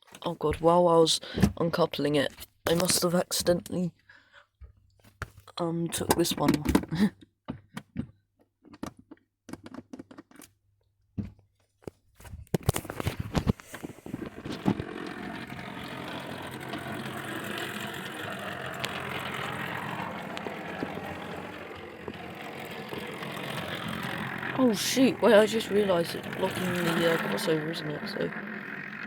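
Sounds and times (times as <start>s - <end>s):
model train running on track: 14.2s - 29.0s.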